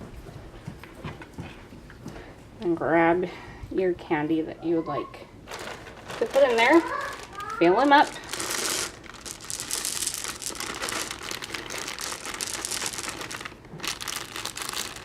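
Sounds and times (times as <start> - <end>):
plastic packaging crinkling: 5.4 - 15.0.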